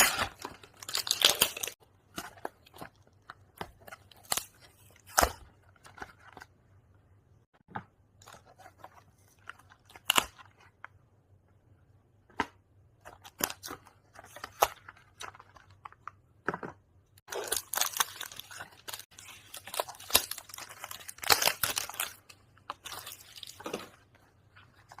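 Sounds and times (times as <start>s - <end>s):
packaging tearing: 0.0s - 1.8s, 17.3s - 23.9s
packaging crinkling: 0.0s - 5.2s, 17.3s - 25.0s.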